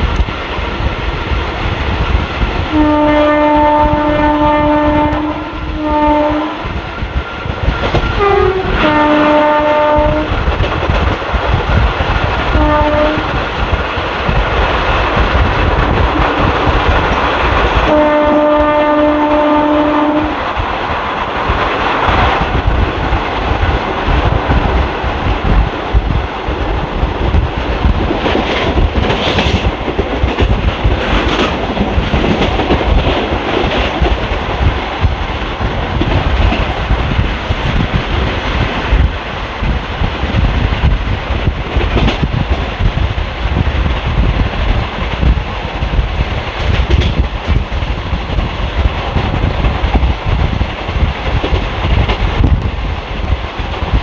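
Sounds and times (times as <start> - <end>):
rushing air: 0.0 - 2.9, 3.7 - 54.0
train wheels rolling on rail: 0.0 - 54.0
locomotive horn blast: 2.7 - 6.6, 8.2 - 10.3, 12.6 - 13.3, 17.9 - 20.4
clacks over rail joints: 9.7 - 19.6, 20.6 - 54.0
deep rumble: 19.6 - 54.0.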